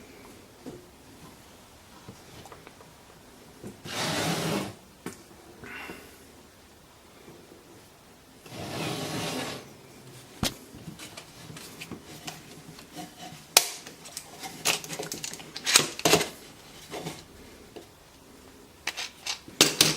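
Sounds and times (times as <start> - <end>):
wood and metal clicks and knocks: 10.4 - 17.9.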